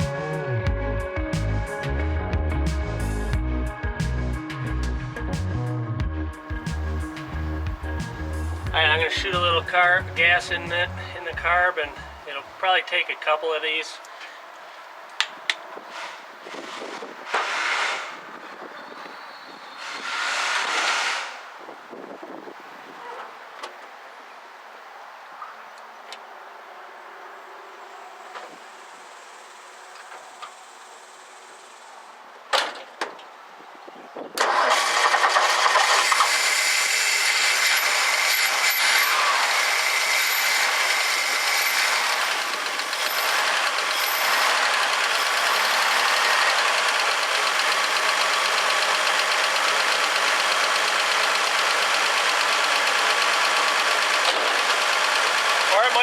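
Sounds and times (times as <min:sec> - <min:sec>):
pickup engine running loudly: 0:06.0 - 0:12.3, 0:34.4 - 0:56.0.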